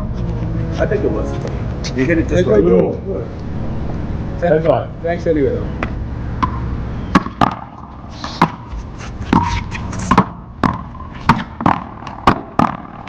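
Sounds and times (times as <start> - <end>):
ball bouncing on court: 5.8 - 13.0
ball slapping wall: 6.4 - 8.7, 9.3 - 13.0
rubber ball struck by paddles: 6.4 - 8.7, 9.3 - 13.0.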